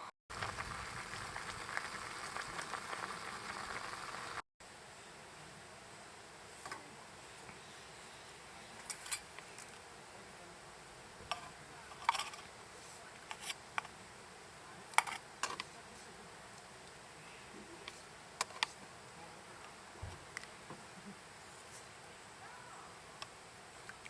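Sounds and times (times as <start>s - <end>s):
campfire crackling: 0.3s - 4.4s.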